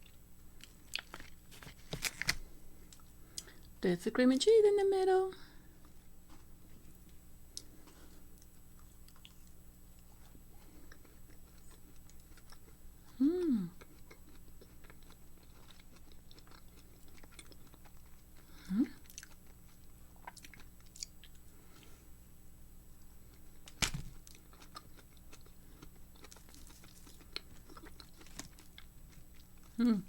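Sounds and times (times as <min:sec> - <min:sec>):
person chewing cookie: 0:00.0 - 0:03.8, 0:05.8 - 0:22.1, 0:23.0 - 0:30.0.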